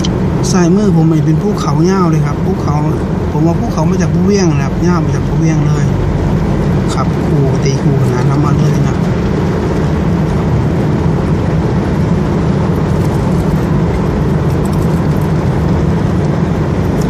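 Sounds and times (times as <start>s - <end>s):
car engine hum: 0.0s - 17.0s
tyre and road noise: 0.0s - 17.0s.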